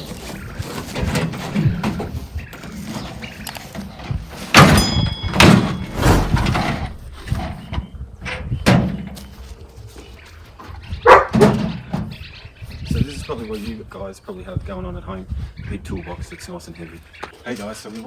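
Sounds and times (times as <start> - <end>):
metal toolbox thunks and knocks: 1.0 - 2.2, 4.3 - 7.5, 11.3 - 12.1.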